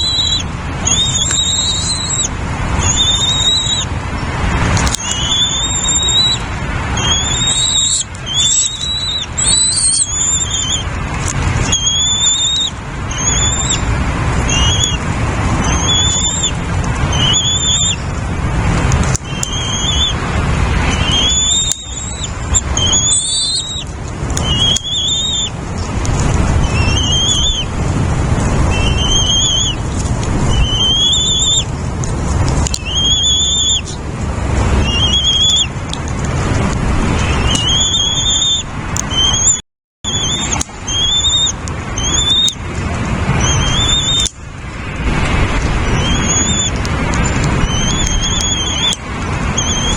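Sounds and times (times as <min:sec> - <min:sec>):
bird whistling call: 0:00.0 - 0:03.9, 0:04.8 - 0:10.9, 0:11.6 - 0:15.0, 0:15.6 - 0:18.1, 0:19.1 - 0:20.2, 0:20.8 - 0:25.6, 0:26.6 - 0:27.8, 0:28.7 - 0:31.7, 0:32.7 - 0:34.0, 0:34.8 - 0:35.7, 0:37.2 - 0:42.6, 0:43.4 - 0:44.3, 0:45.8 - 0:49.9
steady low rumble: 0:00.0 - 0:49.9.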